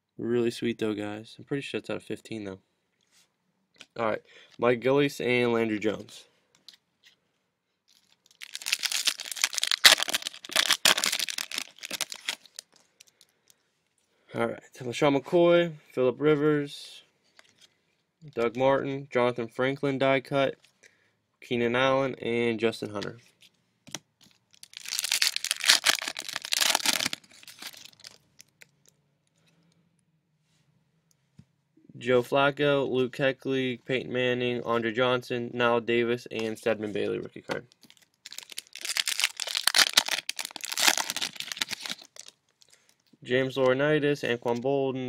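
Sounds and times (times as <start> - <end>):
card pack wrapper tearing and crinkling: 7.9 - 13.3, 24.5 - 28.7, 37.8 - 42.9.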